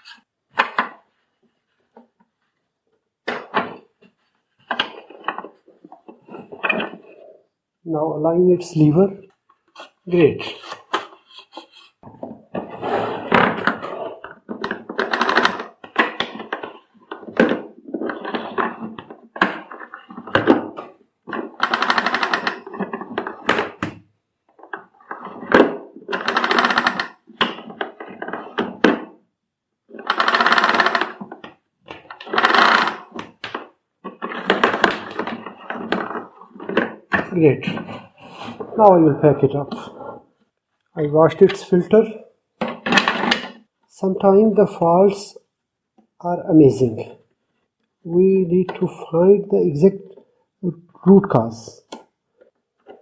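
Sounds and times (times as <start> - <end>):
clicks and knocks of handling: 0.0 - 2.5, 3.3 - 7.2, 12.0 - 29.2
cord reel rattling: 12.6 - 23.8, 24.6 - 29.2, 29.9 - 37.3.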